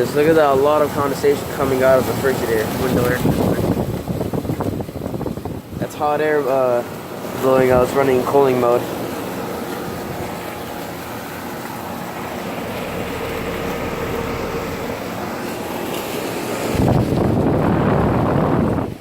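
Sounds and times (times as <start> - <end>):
air conditioner fan whooshing: 0.0 - 19.0
faint air conditioner hum: 0.0 - 19.0
air rushing on microphone: 0.1 - 5.9, 11.7 - 19.0.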